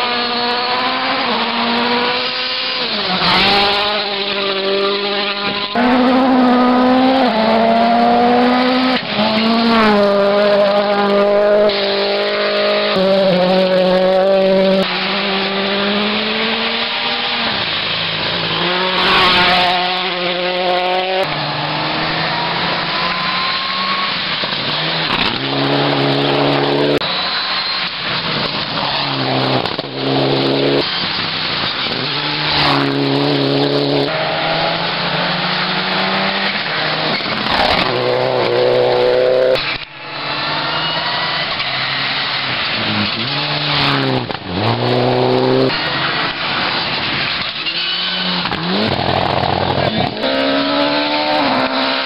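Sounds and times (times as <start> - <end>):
rally car engines revving: 0.0 - 52.0.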